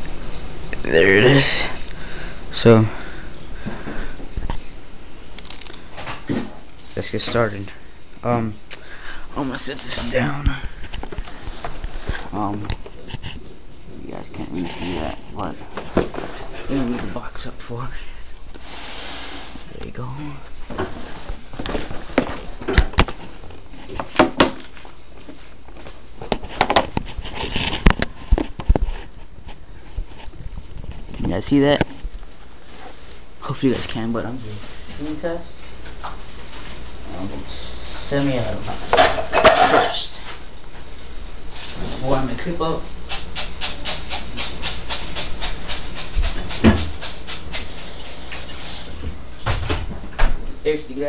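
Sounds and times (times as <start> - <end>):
rustling: 18.4 - 37.0
objects knocking and tapping: 26.2 - 27.1.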